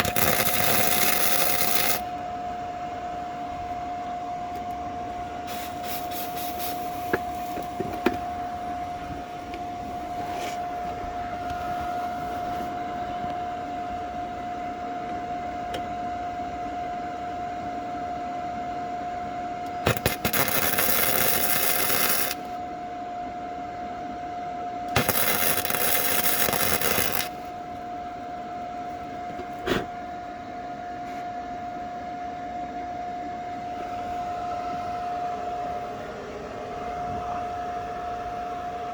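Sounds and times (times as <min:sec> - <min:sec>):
welder crackling and sizzling: 0:00.0 - 0:02.1, 0:05.5 - 0:08.0, 0:19.8 - 0:22.6, 0:24.9 - 0:27.6
steady high hum: 0:00.0 - 0:38.9.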